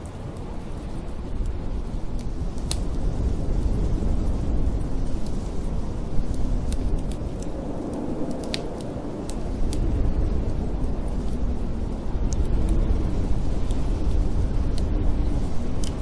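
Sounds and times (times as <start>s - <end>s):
howling storm wind: 0.0s - 16.0s
wood fire crackling and popping: 0.0s - 16.0s.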